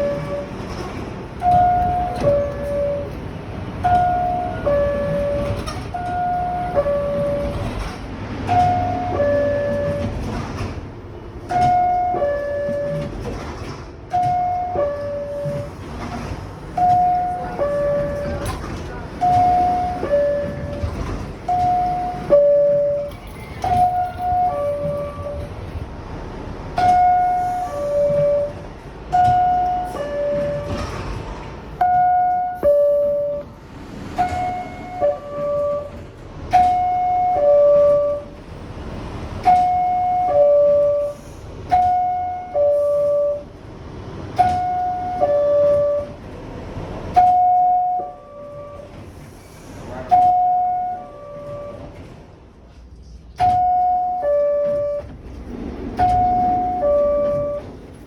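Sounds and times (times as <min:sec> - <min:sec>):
train rumble: 0:00.0 - 0:58.0
two-note door chime: 0:47.2 - 0:48.9, 0:53.4 - 0:55.1, 0:56.0 - 0:57.7.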